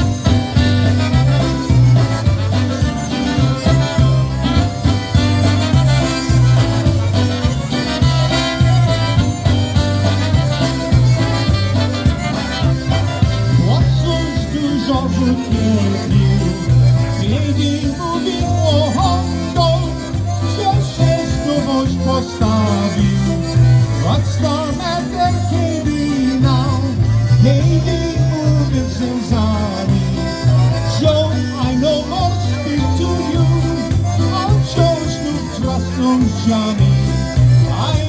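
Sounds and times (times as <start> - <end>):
polka band playing: 0.0 - 38.0.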